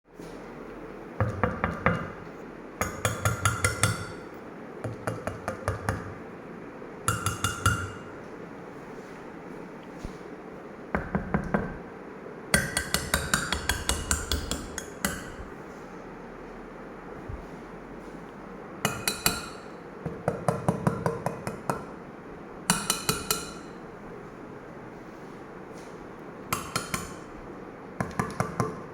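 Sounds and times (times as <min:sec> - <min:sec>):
ring tapping on marble: 0:02.8 - 0:04.3, 0:07.1 - 0:08.1.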